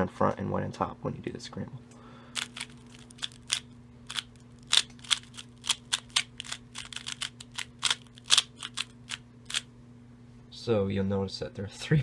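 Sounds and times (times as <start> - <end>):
puzzle cube plastic clicks: 2.4 - 9.6.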